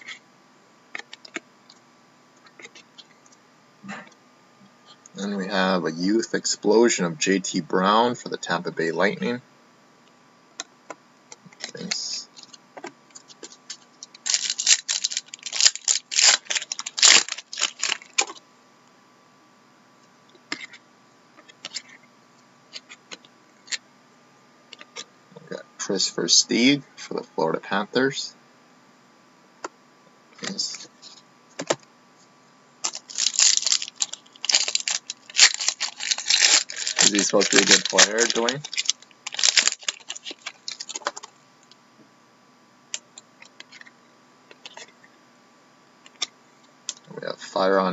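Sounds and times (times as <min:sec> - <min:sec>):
cards and packaging rustling: 0:11.6 - 0:18.4, 0:32.8 - 0:41.3
foil wrappers crinkling: 0:13.3 - 0:18.4, 0:32.8 - 0:41.3.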